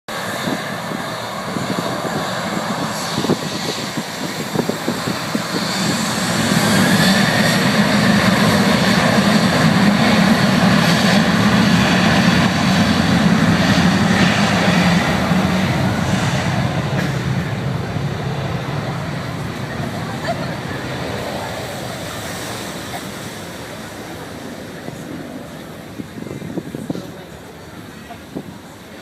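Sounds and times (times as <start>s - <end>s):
jet engines spooling up: 0.1s - 29.0s.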